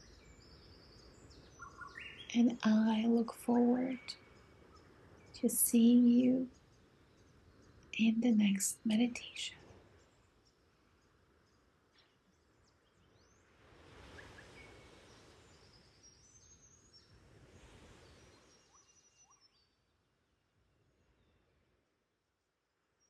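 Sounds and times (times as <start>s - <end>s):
faint ocean waves washing in: 13.4s - 19.1s.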